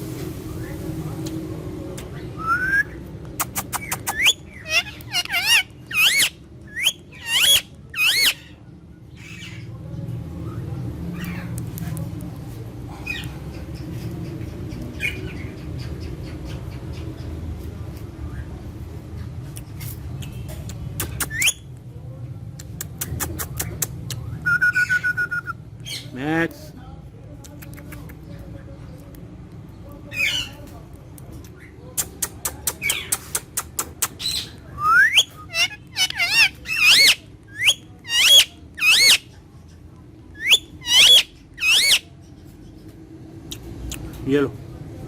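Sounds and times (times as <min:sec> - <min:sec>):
parrot squeaky calls: 0:02.1 - 0:08.6, 0:21.0 - 0:21.7, 0:32.8 - 0:39.4, 0:40.4 - 0:42.1.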